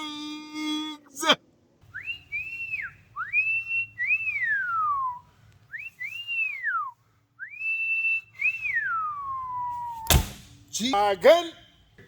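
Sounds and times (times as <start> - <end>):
person whistling: 1.9 - 10.1.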